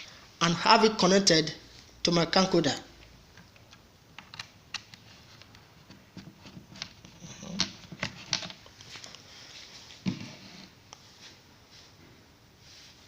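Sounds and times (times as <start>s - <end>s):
cable rustling: 3.3s - 11.3s.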